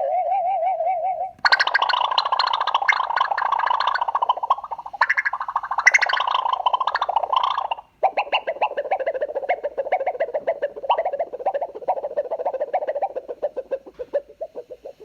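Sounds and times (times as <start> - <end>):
rapid pulsing warble: 1.4 - 13.2.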